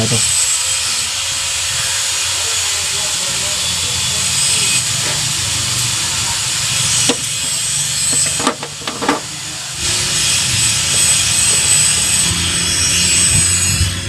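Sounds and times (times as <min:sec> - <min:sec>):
loud hissing rush: 0:00.0 - 0:14.0
sharp clicks or knocks: 0:07.1 - 0:09.3.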